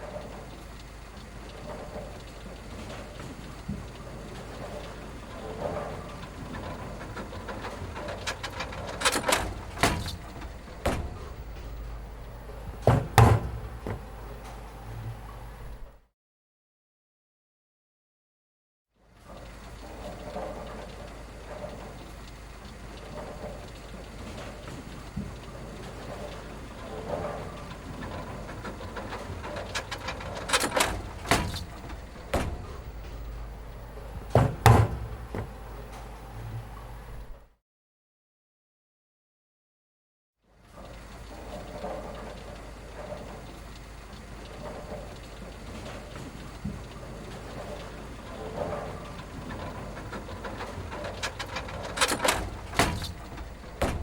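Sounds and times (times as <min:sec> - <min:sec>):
sharp knocks: 0:08.4 - 0:14.5, 0:29.8 - 0:35.8, 0:51.3 - 0:54.0.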